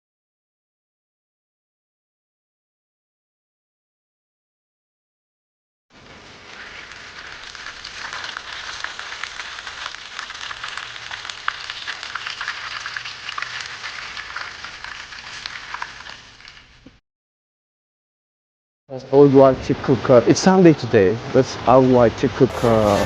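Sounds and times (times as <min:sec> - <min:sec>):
chicken sizzling in hot oil: 0:05.9 - 0:16.8, 0:22.5 - 0:23.0.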